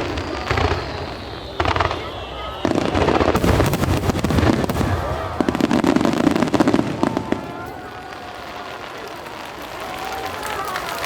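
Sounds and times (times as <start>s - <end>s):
crowd voices: 0.0s - 11.0s
fireworks bangs and crackle: 0.0s - 11.0s.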